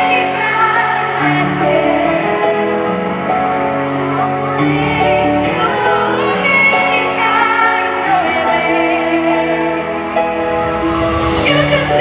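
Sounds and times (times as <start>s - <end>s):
woman singing a pop ballad: 0.0s - 2.8s, 4.5s - 10.1s, 11.1s - 12.0s
piano accompaniment: 0.0s - 12.0s.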